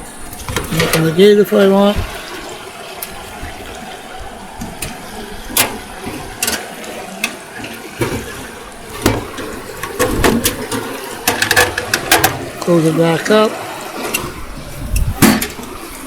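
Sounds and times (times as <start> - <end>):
sluice gate clicks and knocks: 4.6 - 12.7, 14.9 - 15.8.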